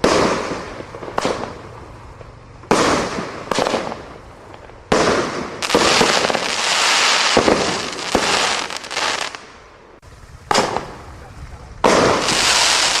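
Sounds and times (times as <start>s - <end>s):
fireworks bursting: 0.0s - 13.0s.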